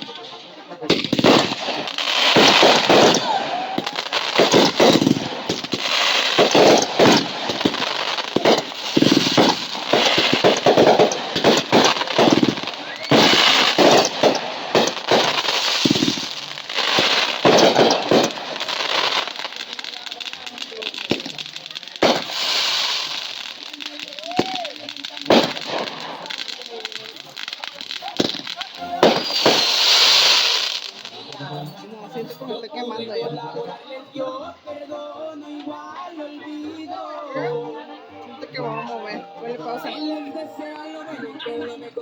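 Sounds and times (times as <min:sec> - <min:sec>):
fireworks banging: 0:00.0 - 0:32.7
fireworks crackling: 0:00.0 - 0:33.8.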